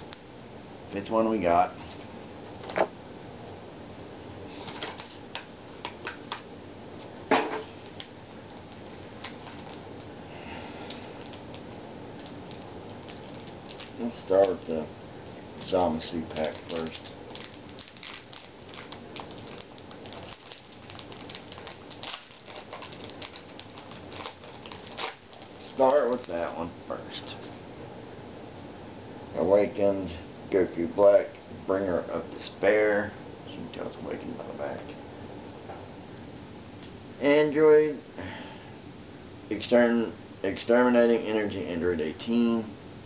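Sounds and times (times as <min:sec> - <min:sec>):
card packs rustling: 0:08.8 - 0:09.8, 0:12.2 - 0:14.8, 0:15.6 - 0:26.4.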